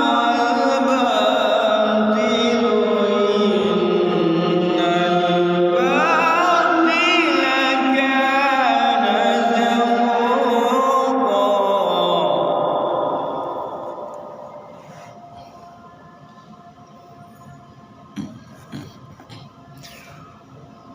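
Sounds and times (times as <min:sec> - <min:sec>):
person chanting melodic recitation: 0:00.0 - 0:15.1.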